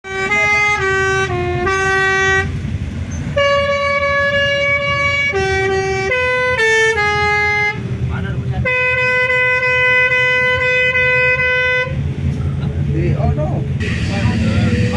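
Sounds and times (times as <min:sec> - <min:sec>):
musical bus horn: 0:00.0 - 0:02.6, 0:03.3 - 0:07.9, 0:08.6 - 0:12.0, 0:13.8 - 0:14.9
bus engine running: 0:00.0 - 0:14.9.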